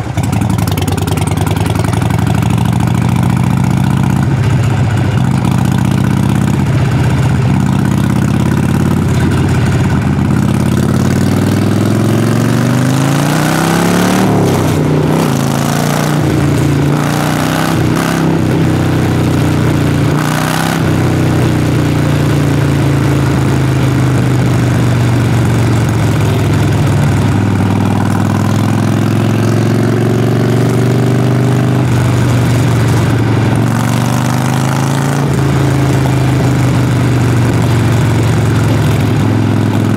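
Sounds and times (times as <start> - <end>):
motorcycle exhaust revving: 0.0 - 39.9.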